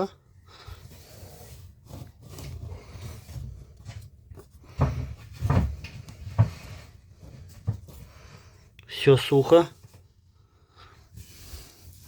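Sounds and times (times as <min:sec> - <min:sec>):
dull knocks and thumps: 0:01.8 - 0:08.3.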